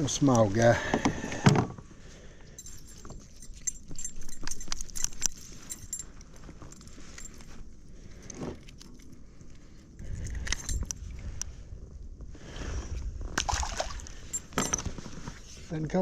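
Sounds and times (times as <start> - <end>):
fishing tackle clinking and rattling: 2.4 - 11.4, 13.6 - 15.4.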